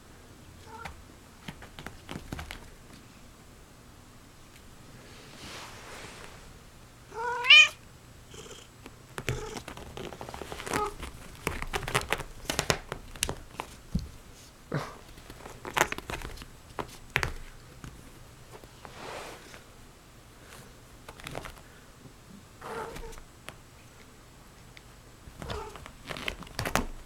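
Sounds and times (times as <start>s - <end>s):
cat meowing: 0.6s - 1.0s, 7.1s - 7.8s
cats moving and playing: 0.6s - 3.3s, 4.5s - 6.6s, 9.1s - 21.8s, 22.6s - 27.0s.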